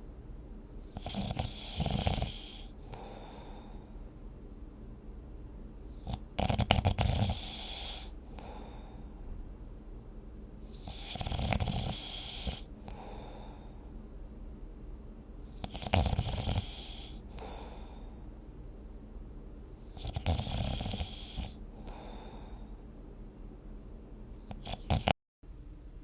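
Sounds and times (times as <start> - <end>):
person snoring: 0.9 - 3.9, 6.0 - 9.1, 10.7 - 13.8, 15.5 - 18.2, 19.9 - 22.7, 24.5 - 25.2.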